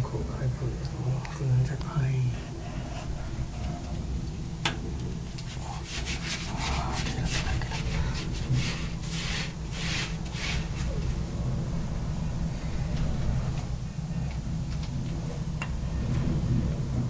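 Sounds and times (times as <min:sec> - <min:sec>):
low rumble: 0:00.0 - 0:17.0.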